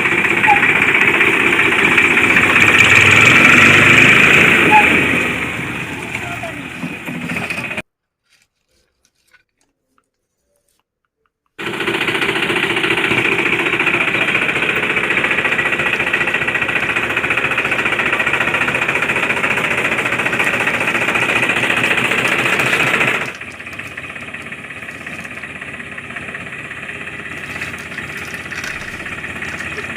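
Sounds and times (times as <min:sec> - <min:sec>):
small machine rattling hammering: 0:11.6 - 0:29.9.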